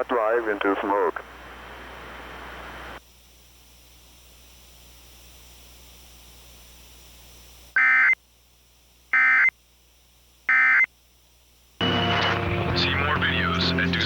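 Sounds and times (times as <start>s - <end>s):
faint hiss: 0.0s - 3.0s
buzzing data tone bursts: 7.8s - 8.2s, 9.1s - 9.6s, 10.5s - 10.9s.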